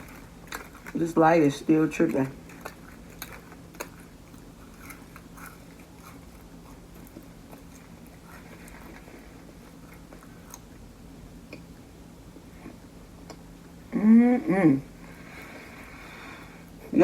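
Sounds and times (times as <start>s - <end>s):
person chewing food: 0.0s - 11.8s
faint steady hum: 0.0s - 17.0s.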